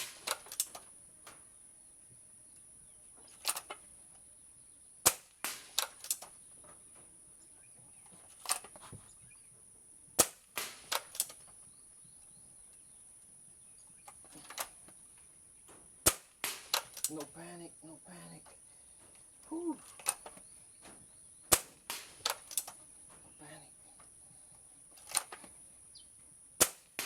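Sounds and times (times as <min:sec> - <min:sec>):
air rifle shot: 0:00.0 - 0:00.8, 0:05.0 - 0:06.3, 0:10.2 - 0:11.3, 0:16.0 - 0:17.1, 0:21.5 - 0:22.7, 0:26.6 - 0:27.0
rifle cocking clicks and knocks: 0:00.0 - 0:01.4, 0:03.3 - 0:03.9, 0:05.1 - 0:06.8, 0:08.2 - 0:08.9, 0:10.2 - 0:11.6, 0:14.0 - 0:15.0, 0:15.7 - 0:17.3, 0:19.8 - 0:22.9, 0:24.9 - 0:25.6
steady high hiss: 0:00.0 - 0:27.0.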